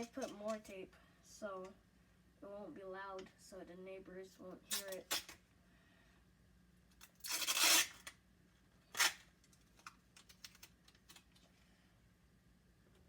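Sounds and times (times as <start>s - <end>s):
adhesive tape ripping: 4.7s - 5.4s, 7.0s - 8.2s, 8.9s - 9.3s.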